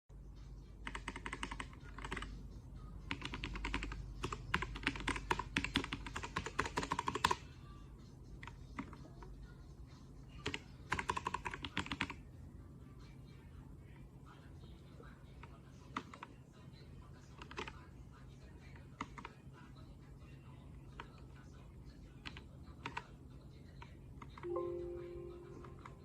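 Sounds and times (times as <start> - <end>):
fast mechanical keyboard typing: 0.8 - 2.3, 3.1 - 7.4, 10.4 - 12.2, 17.4 - 17.8, 22.2 - 23.1.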